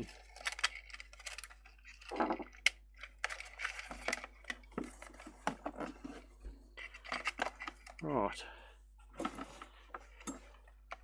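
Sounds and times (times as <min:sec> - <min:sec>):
small plastic parts clicking: 0:00.0 - 0:05.0.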